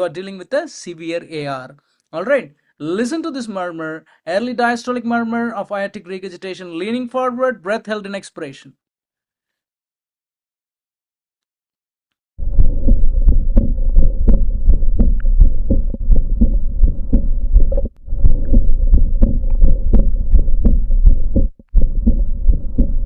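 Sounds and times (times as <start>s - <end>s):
heartbeats with murmur: 12.4s - 23.0s.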